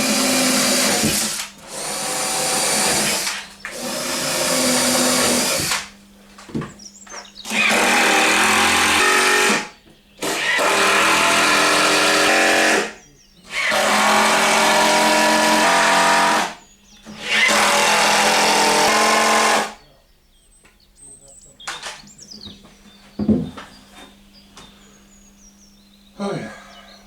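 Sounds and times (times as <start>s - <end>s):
power drill driving screws into wood: 0.0s - 6.0s, 7.4s - 19.8s.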